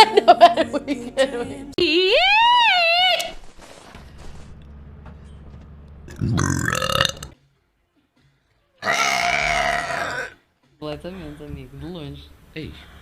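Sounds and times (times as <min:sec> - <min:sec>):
girl burping loudly: 0:08.8 - 0:10.3.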